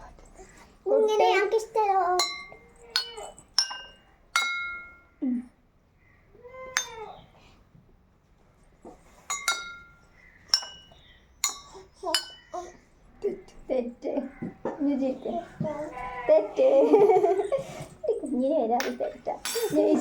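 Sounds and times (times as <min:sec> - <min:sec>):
water glasses tapped ringing: 0:02.2 - 0:05.1, 0:06.7 - 0:07.2, 0:09.3 - 0:12.6.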